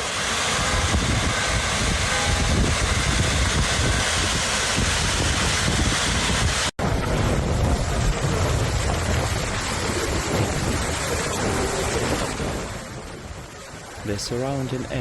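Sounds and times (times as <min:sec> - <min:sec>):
storm wind buffeting microphone: 0:00.0 - 0:15.0.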